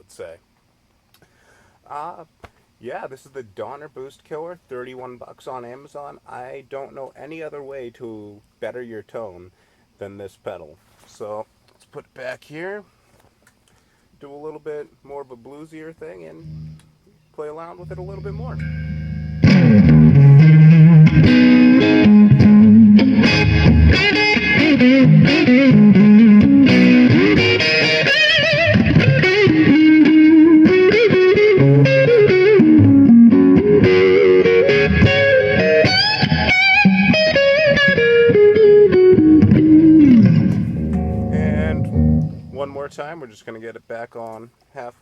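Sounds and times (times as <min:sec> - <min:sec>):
bluesy electric guitar lead: 0:16.4 - 0:17.0, 0:17.8 - 0:42.9.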